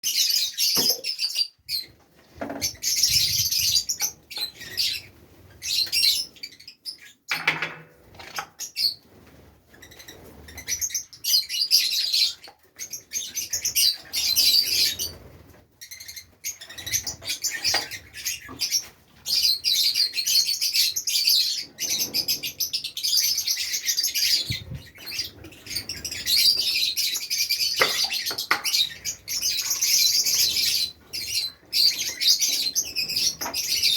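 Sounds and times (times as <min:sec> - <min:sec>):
lovebirds chirping: 0:00.0 - 0:07.5, 0:08.6 - 0:33.9.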